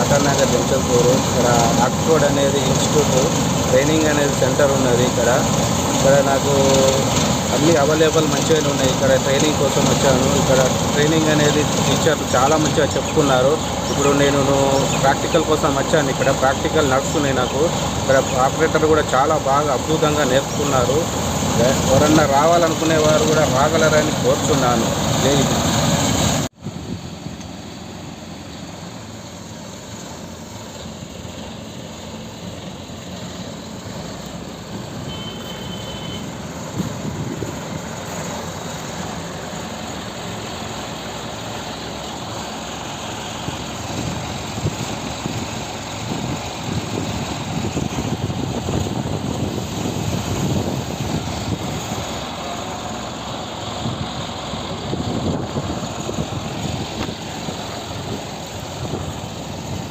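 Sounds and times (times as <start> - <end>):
crane engine running: 0.0 - 59.9
short high beep: 35.0 - 36.3.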